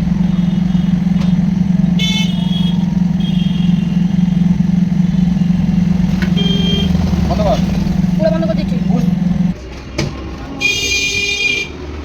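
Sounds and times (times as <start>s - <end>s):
vehicle horn tooting: 0.0s - 4.6s, 6.1s - 7.6s, 10.6s - 11.8s.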